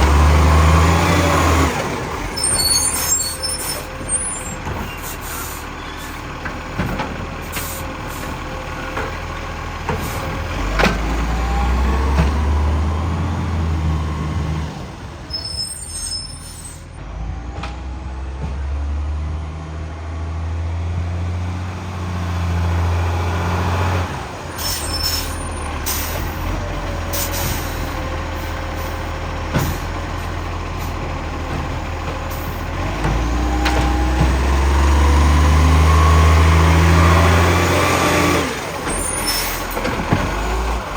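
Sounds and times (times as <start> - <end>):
diesel engine revving with exhaust leak: 0.0 - 8.5, 9.6 - 16.8, 18.0 - 40.9
brief high squeals: 2.4 - 6.2, 15.3 - 17.0, 24.6 - 25.7.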